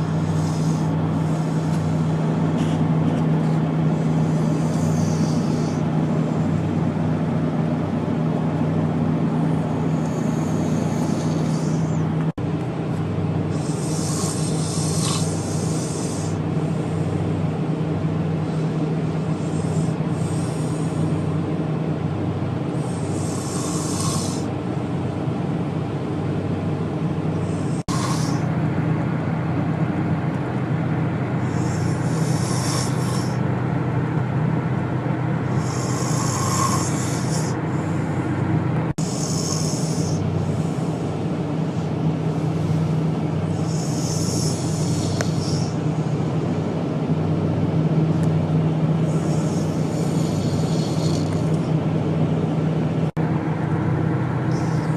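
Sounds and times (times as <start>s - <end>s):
hissing breath: 0.0s - 2.8s, 3.4s - 6.7s, 9.6s - 12.3s, 13.5s - 17.3s, 31.4s - 33.4s, 35.4s - 45.9s, 49.0s - 51.7s, 54.4s - 54.9s
man snoring: 0.0s - 7.2s, 9.3s - 12.3s, 13.5s - 17.2s, 18.4s - 21.4s, 22.7s - 24.5s, 27.4s - 28.5s, 31.4s - 33.4s, 35.4s - 46.1s, 48.9s - 51.8s, 54.4s - 54.9s
steady low hum: 0.0s - 54.9s.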